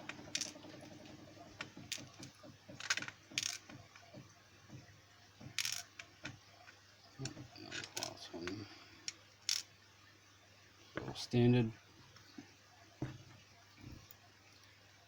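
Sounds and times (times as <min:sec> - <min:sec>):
metal pins clicking on hard surface: 0:00.0 - 0:00.6, 0:01.6 - 0:03.7, 0:05.5 - 0:06.1.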